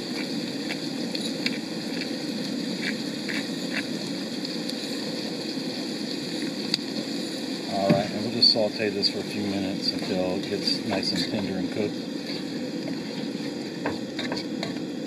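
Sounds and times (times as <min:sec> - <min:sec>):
vegetables sizzling in a pan: 0:00.0 - 0:15.0.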